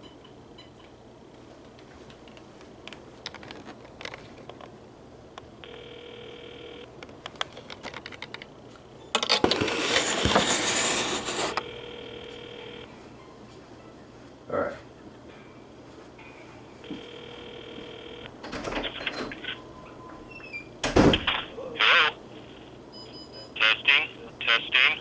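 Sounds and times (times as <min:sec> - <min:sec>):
cordless phone electronic ringer: 0:05.6 - 0:06.9, 0:11.6 - 0:12.9, 0:16.8 - 0:18.3
telephone ringback tone: 0:05.6 - 0:06.9, 0:11.5 - 0:13.0, 0:16.8 - 0:18.3.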